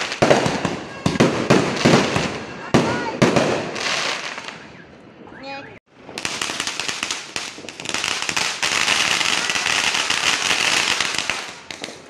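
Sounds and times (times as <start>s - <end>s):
fireworks crackling: 0.0s - 4.8s, 5.9s - 12.0s.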